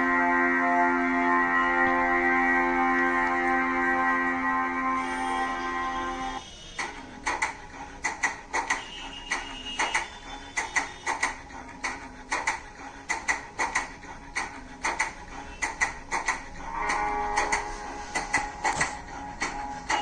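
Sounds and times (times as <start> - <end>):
percussive music clicks on speakers: 6.8 - 20.0.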